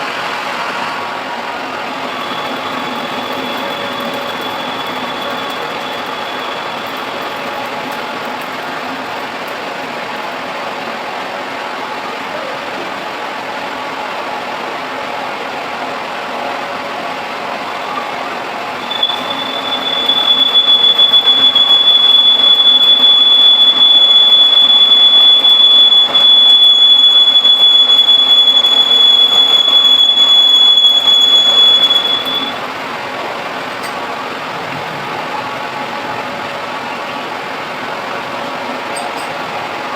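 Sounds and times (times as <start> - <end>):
lathe running: 0.0 - 12.2, 15.6 - 39.9
high-pitched squeal of cutting tool: 1.8 - 10.2, 17.8 - 32.7, 38.9 - 39.6.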